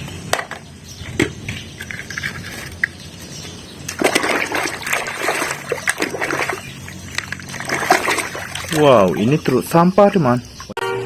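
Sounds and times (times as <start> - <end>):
water splashing and sloshing: 3.9 - 9.6.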